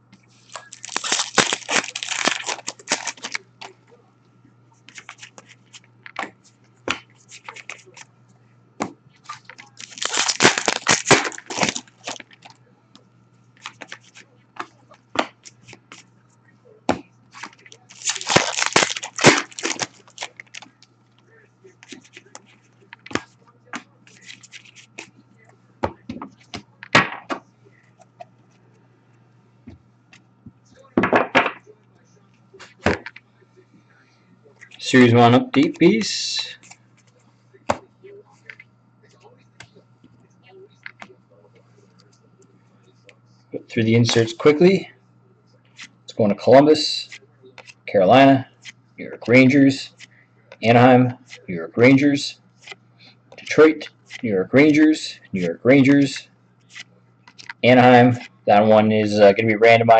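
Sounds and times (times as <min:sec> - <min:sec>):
low electrical hum: 0:00.0 - 0:59.9
card wrappers torn and crinkled: 0:00.5 - 0:03.7, 0:09.3 - 0:12.5, 0:17.4 - 0:20.8.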